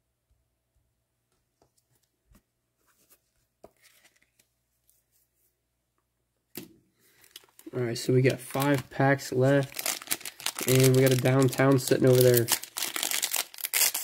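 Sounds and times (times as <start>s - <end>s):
trading cards being handled: 1.6s - 5.1s, 6.6s - 14.0s.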